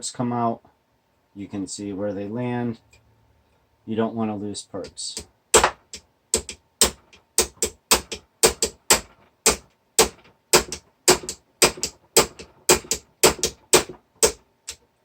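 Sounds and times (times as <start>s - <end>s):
hammer tapping metal punch: 4.9s - 14.8s.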